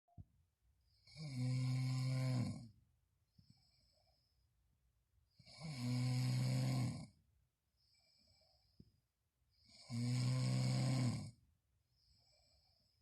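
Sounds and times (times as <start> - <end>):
person snoring loudly: 1.0 - 2.7, 5.4 - 7.2, 9.7 - 11.4
faint breath: 3.3 - 4.6, 7.7 - 9.6, 11.9 - 13.0.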